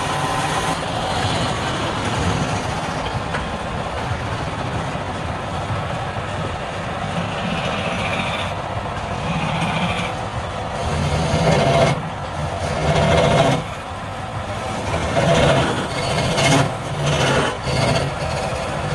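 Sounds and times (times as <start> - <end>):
turning tool cutting wood: 0.0 - 0.8, 10.8 - 13.7, 14.7 - 18.9
wood lathe motor hum: 0.0 - 0.9, 10.8 - 13.9, 14.6 - 18.9.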